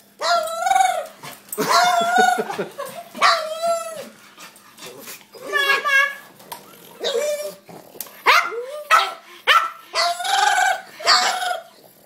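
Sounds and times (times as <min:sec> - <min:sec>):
dog yapping and yowling: 0:00.2 - 0:04.2, 0:05.3 - 0:06.3, 0:06.9 - 0:07.6, 0:08.2 - 0:11.8.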